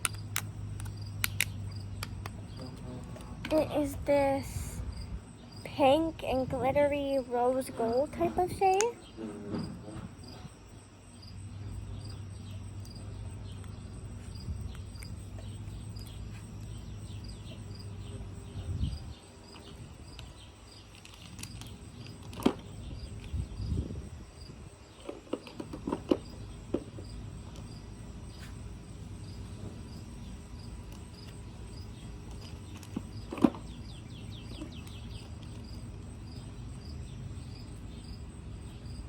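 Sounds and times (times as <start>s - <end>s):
plastic tubes clicking: 0.0s - 2.4s
cricket chirping: 0.0s - 6.1s, 8.9s - 39.0s.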